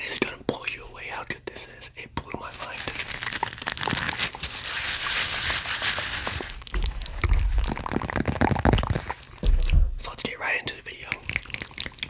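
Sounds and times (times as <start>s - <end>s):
filling crunching and crackling: 2.2s - 12.0s
low handling thuds: 6.5s - 8.0s, 8.8s - 10.3s.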